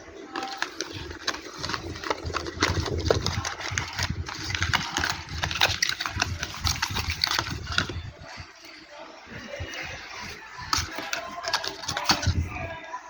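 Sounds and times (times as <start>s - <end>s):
packaging rustling: 0.2s - 8.7s, 9.6s - 12.8s
packaging clicks and taps: 0.3s - 8.1s, 10.2s - 12.6s.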